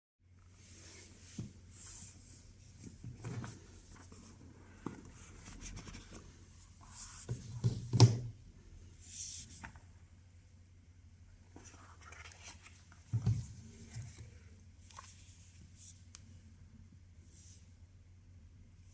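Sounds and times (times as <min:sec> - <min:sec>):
rubbing and scraping handling noise: 0:00.4 - 0:08.0.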